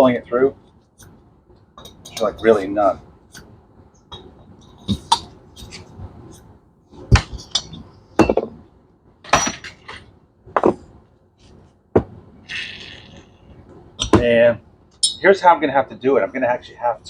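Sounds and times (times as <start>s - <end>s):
metal tools clinking on workbench: 9.3s - 10.0s.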